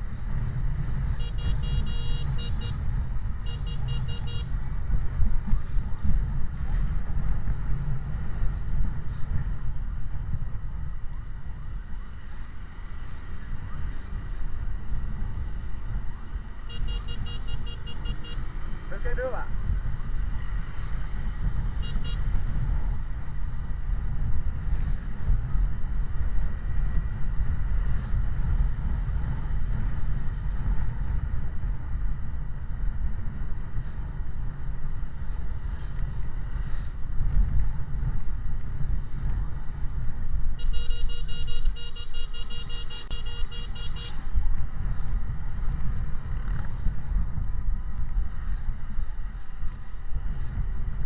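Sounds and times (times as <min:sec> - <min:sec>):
vehicle rumble in traffic: 0:00.0 - 0:51.0
wind on microphone: 0:00.0 - 0:51.0
high warning tone beeping: 0:16.7 - 0:18.5, 0:40.6 - 0:44.2.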